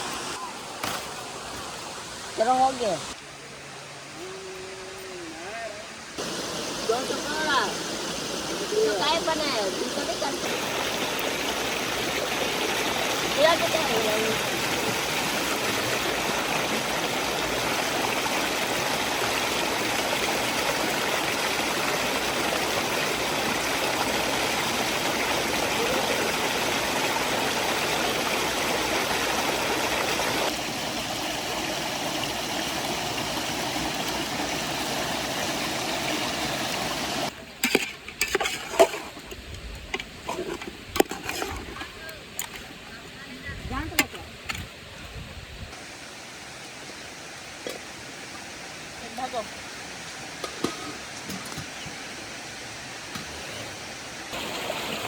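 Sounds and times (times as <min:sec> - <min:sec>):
loud rushing hiss: 0:06.0 - 0:13.3.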